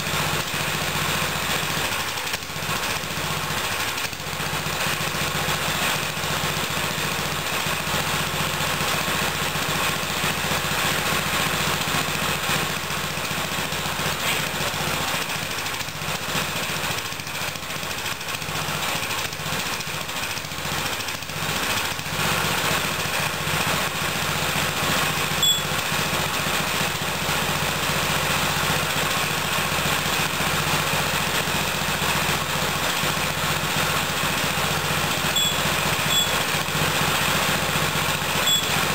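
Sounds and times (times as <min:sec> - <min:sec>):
lawn mower engine running: 0:00.0 - 0:38.9
short high alarm beep: 0:25.4 - 0:25.7, 0:35.4 - 0:36.4, 0:38.4 - 0:38.8.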